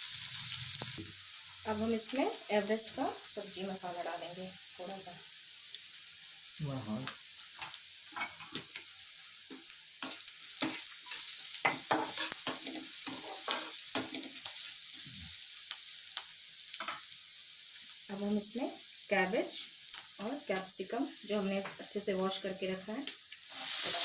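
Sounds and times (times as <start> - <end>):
onions sizzling in hot oil: 0.0 - 24.0
stirring scraping against pan: 10.0 - 14.8, 23.5 - 24.0.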